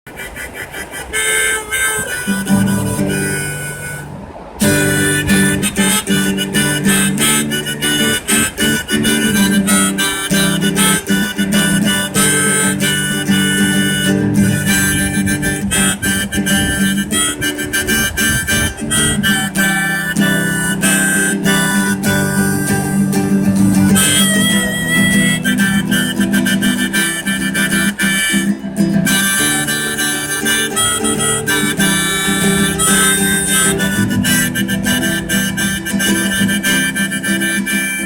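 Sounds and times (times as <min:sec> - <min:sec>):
harmonica bending notes: 0:00.0 - 0:38.0
strummed acoustic guitar: 0:00.1 - 0:38.0.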